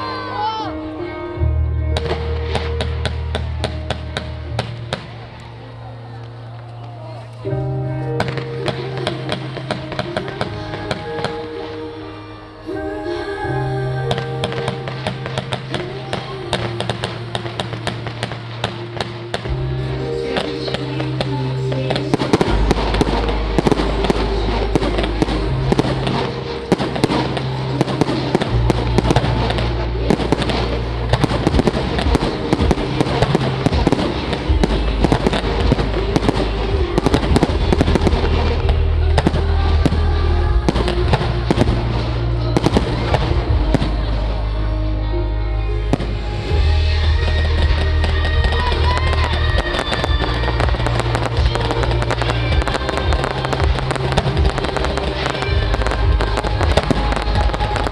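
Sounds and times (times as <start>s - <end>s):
music with bass line: 13.5s - 57.9s
fireworks bangs and crackling: 14.1s - 44.4s, 45.9s - 57.9s.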